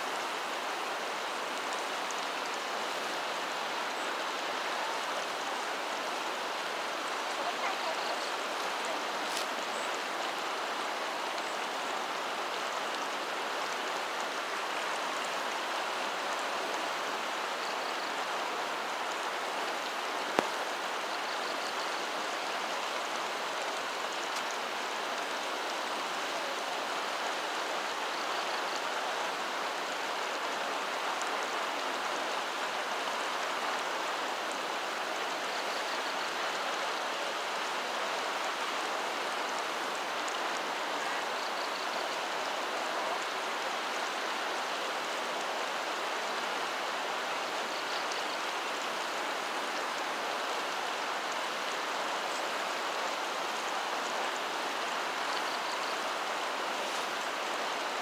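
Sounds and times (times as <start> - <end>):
water rushing: 0.0 - 21.1.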